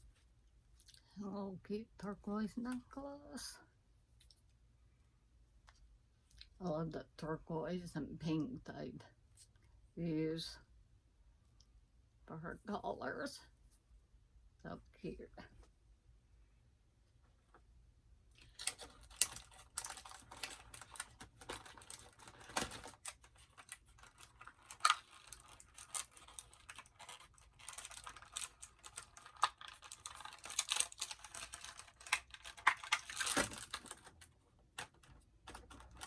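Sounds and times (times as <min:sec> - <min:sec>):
packaging crinkling: 0:18.4 - 0:36.0
plastic toy pieces clicking: 0:18.5 - 0:34.2.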